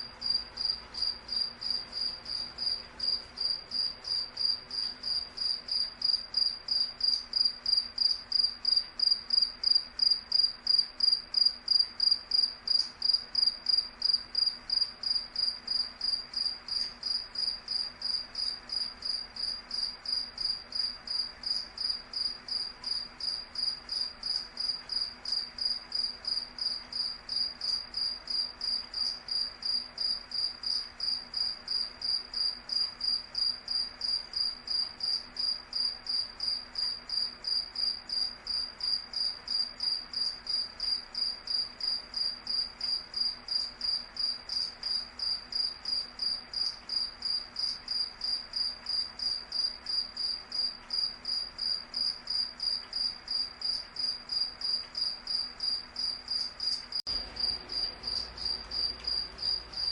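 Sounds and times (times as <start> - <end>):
cricket chirping: 0.0 - 59.9.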